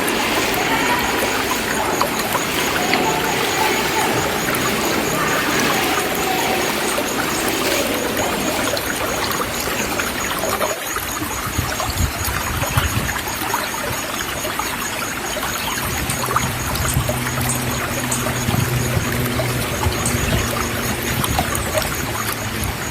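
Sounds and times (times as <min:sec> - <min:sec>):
stream water flowing: 0:00.0 - 0:11.2
small water splashes: 0:00.0 - 0:22.9.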